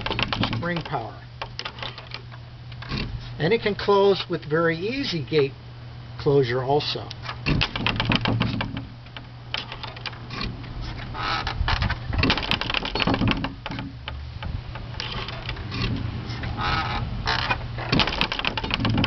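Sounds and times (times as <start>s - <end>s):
gate latch clicking and rattling: 0.0s - 3.1s, 7.2s - 19.0s.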